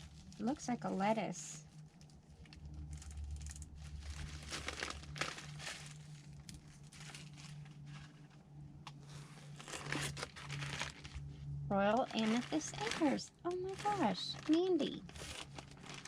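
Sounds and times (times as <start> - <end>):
low steady hum: 0.0 - 16.0
seed packets crinkling: 2.0 - 8.2, 9.5 - 16.0.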